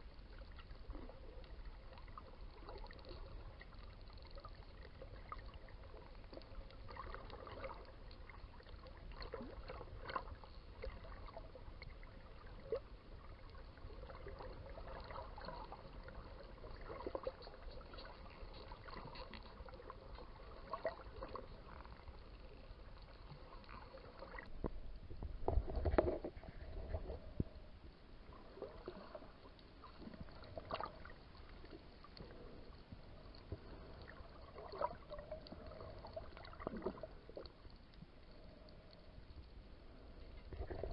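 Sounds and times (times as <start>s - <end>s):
rush of water: 12.5s - 39.0s.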